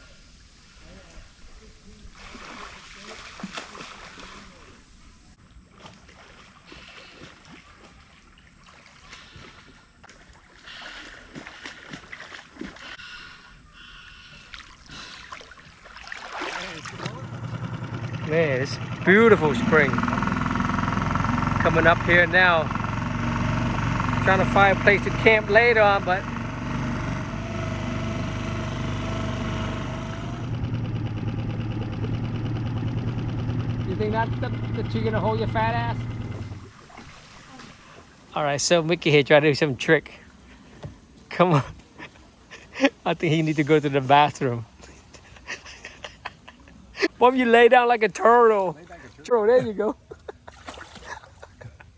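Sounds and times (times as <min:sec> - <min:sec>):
water splashing around boat: 0:02.0 - 0:13.0, 0:14.0 - 0:32.6, 0:33.2 - 0:38.8, 0:50.2 - 0:51.9
outboard motor running: 0:16.2 - 0:38.2.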